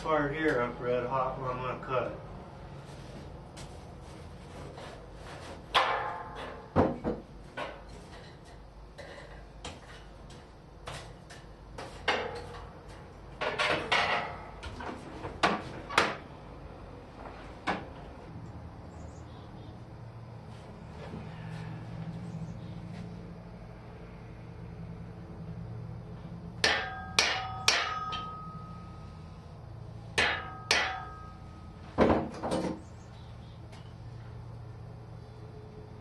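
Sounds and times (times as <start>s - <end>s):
steady low hum: 16.1s - 36.0s
metallic clinks and knocks of tools: 26.9s - 29.1s.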